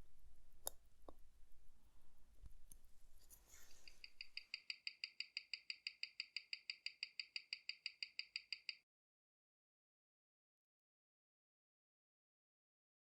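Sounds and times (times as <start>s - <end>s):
watch ticking: 3.8s - 8.8s.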